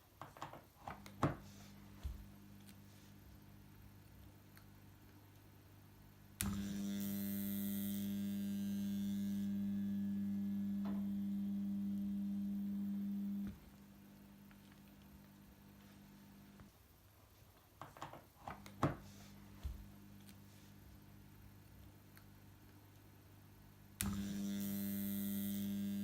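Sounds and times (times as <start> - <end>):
transformer mains hum: 0.9 - 17.1, 18.5 - 26.0
switch click: 6.4 - 6.7.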